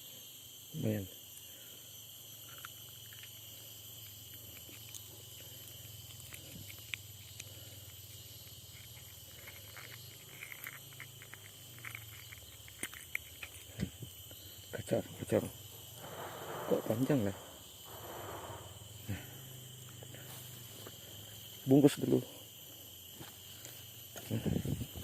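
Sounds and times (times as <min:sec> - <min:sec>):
insect chorus drone: 0:00.0 - 0:25.0
small clicks and rustles: 0:02.4 - 0:14.0.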